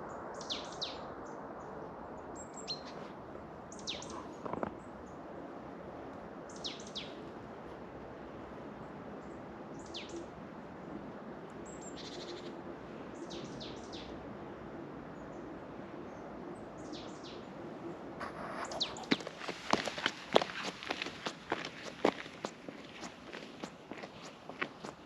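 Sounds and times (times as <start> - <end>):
songbird calling: 3.7 - 4.9, 18.2 - 20.2
background hiss: 15.2 - 25.0
footsteps on a trail: 18.2 - 25.0.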